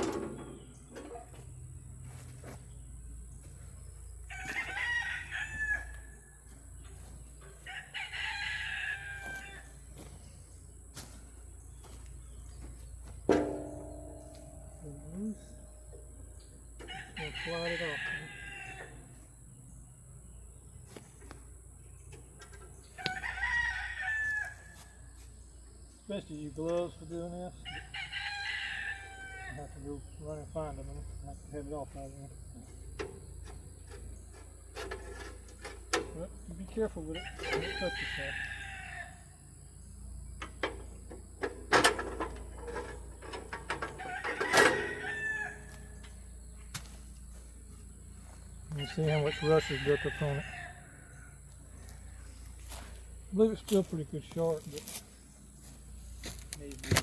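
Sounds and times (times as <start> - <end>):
loud metal clangs: 0.0 - 1.2, 13.1 - 16.5, 41.4 - 45.2
metal knocks and scrapes: 0.0 - 4.8, 10.0 - 17.0, 32.6 - 37.9, 40.4 - 48.1
rooster crowing: 4.3 - 6.4, 7.6 - 9.8, 16.8 - 19.2, 23.0 - 25.0, 27.6 - 29.7, 37.2 - 39.4, 43.7 - 46.0, 48.7 - 51.5.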